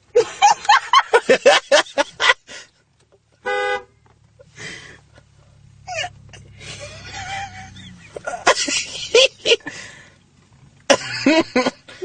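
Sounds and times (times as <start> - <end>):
car horn honk: 3.4 - 4.0.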